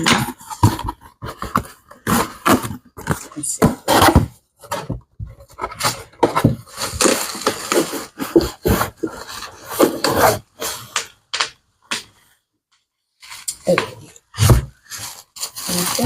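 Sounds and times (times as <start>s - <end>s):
cardboard scraping and rustling: 0.0s - 10.9s, 13.2s - 16.0s.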